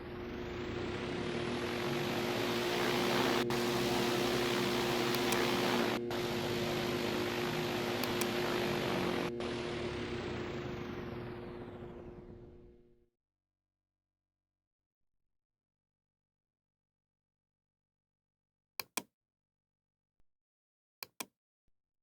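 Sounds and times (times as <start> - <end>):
fan motor hum: 0.0 - 12.8.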